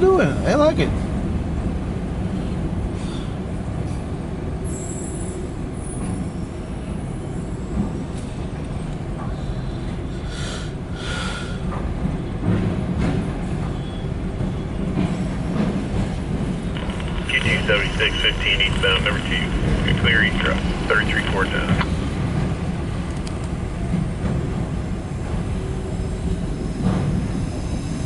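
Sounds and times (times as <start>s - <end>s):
freight train rumbling past: 0.0s - 28.0s.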